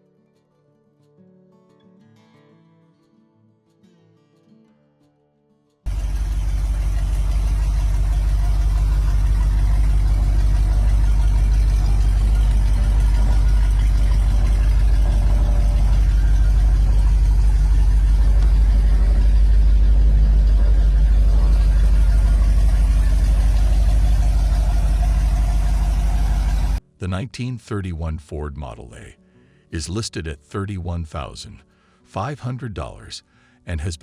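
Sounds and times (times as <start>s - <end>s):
car engine idling: 5.9s - 26.8s.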